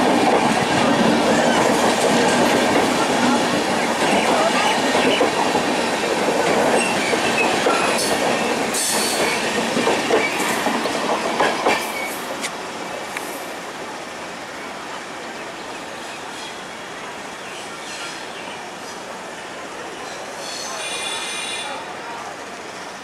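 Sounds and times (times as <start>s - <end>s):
train wheel squeal: 6.7s - 9.5s, 20.0s - 21.8s.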